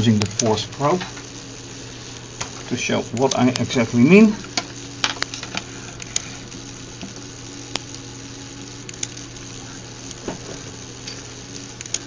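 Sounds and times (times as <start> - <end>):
steady hiss: 0.0 - 12.0
faint clicks: 8.9 - 9.2, 11.8 - 12.0.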